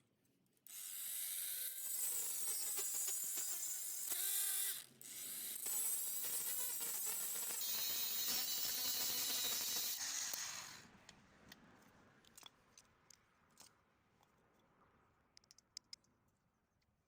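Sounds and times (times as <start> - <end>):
angle grinder whining: 0.7 - 10.9
light clicks and taps: 15.4 - 16.1.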